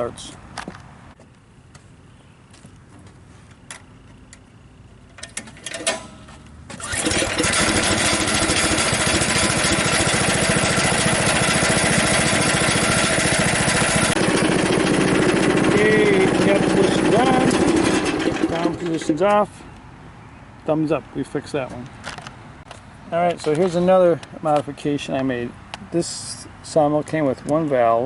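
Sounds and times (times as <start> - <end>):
pull-start clicks and knocks: 5.1 - 19.3
small gasoline engine running: 6.8 - 19.2.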